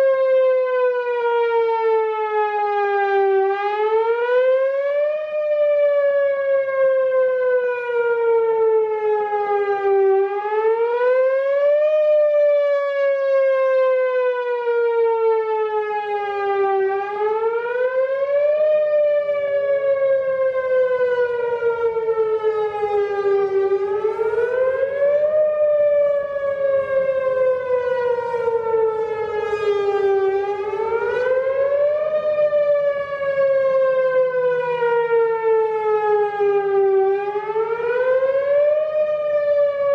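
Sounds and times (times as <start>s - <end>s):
warning siren whooping: 0.0s - 39.9s.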